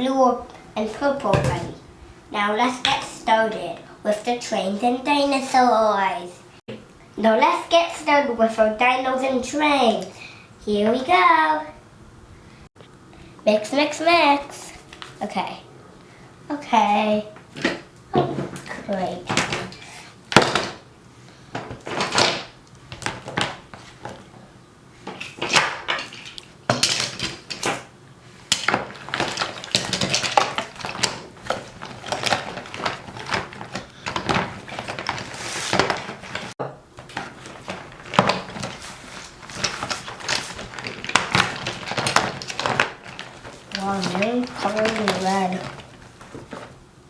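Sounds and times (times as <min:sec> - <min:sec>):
toys knocking and clattering: 0:25.1 - 0:27.8, 0:28.5 - 0:38.9, 0:39.5 - 0:46.7.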